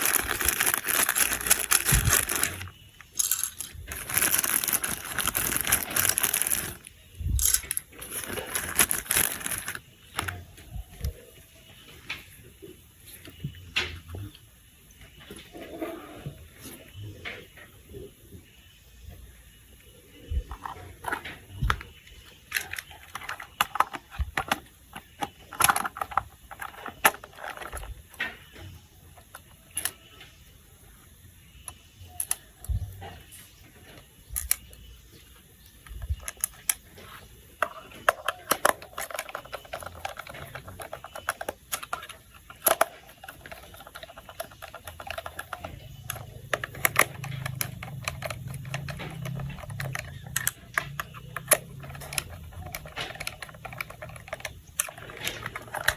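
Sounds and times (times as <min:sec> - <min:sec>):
plastic toy parts clicking: 0:00.0 - 0:10.4, 0:20.5 - 0:28.3, 0:32.2 - 0:32.8, 0:34.3 - 0:34.9, 0:35.8 - 0:37.0, 0:37.6 - 0:55.9.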